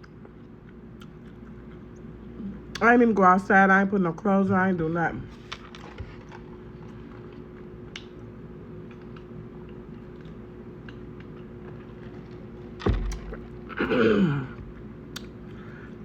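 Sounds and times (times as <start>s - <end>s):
quiet eating: 0.0s - 2.8s, 5.3s - 16.0s
steady low hum: 0.0s - 16.0s
heavy thump: 12.8s - 13.4s.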